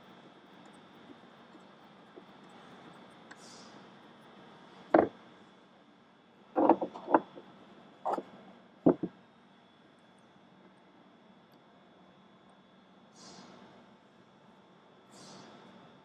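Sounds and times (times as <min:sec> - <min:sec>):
knocks and clatters of parts: 0:06.6 - 0:07.4, 0:08.9 - 0:09.1.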